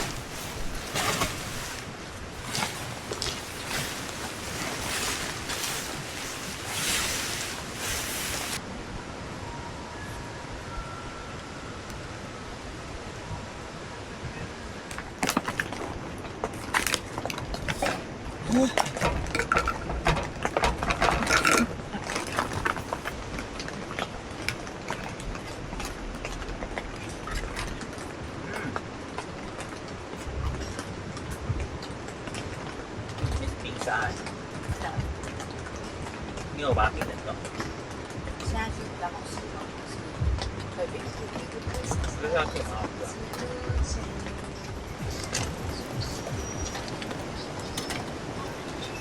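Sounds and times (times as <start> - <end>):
creek water rushing: 0.0 - 9.4, 11.5 - 49.0
rapid clicks and knocks: 18.8 - 23.2.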